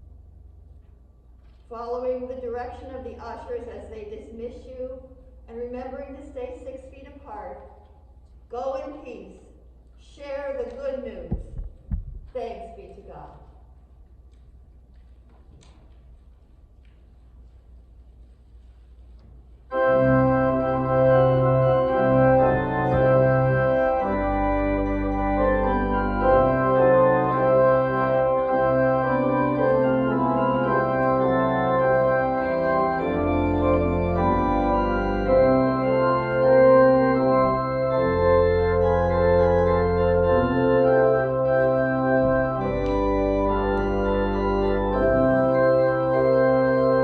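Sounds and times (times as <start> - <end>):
church organ chords: 19.7 - 47.0.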